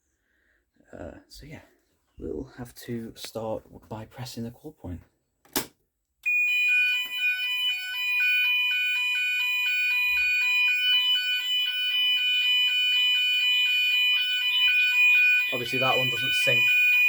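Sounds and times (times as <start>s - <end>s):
fire alarm sounders: 6.2s - 17.0s.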